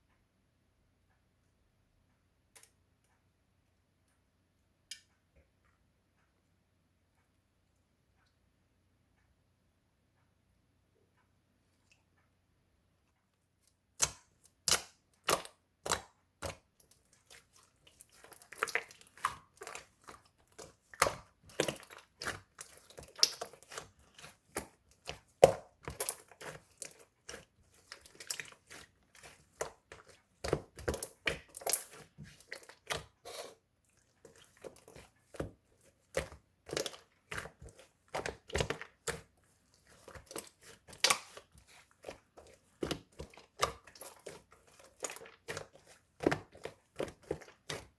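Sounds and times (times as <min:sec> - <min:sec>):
hands kneading sticky slime: 0:13.5 - 0:47.9.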